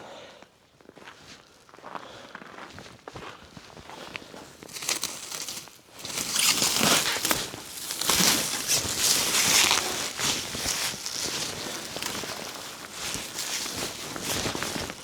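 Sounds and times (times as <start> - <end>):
packaging rustling and crinkling: 4.6 - 15.0.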